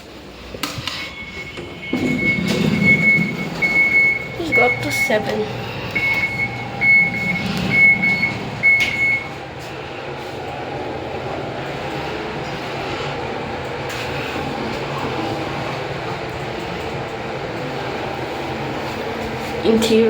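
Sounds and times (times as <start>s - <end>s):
lift hum and rumble: 0.0s - 20.0s
short electronic beeps: 1.1s - 9.3s.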